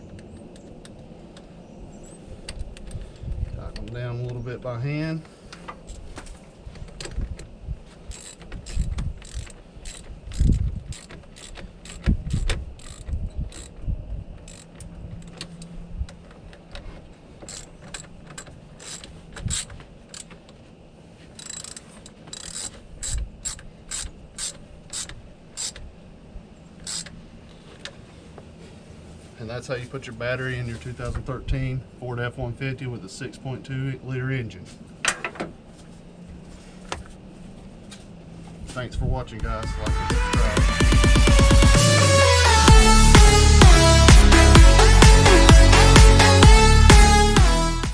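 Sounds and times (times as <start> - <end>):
ratchet wrench clicking: 8.1 - 13.8, 14.4 - 14.8, 17.4 - 20.4, 21.4 - 25.8, 26.8 - 27.1.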